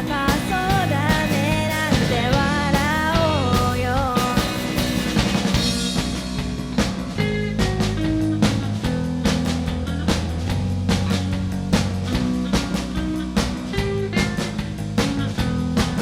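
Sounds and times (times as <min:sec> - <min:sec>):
person singing: 0:00.0 - 0:04.9
rock band playing live: 0:00.0 - 0:16.0.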